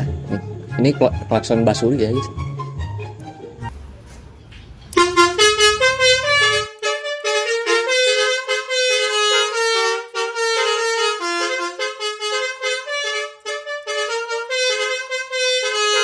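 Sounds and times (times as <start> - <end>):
musical bus horn playing tune: 3.6 - 16.0.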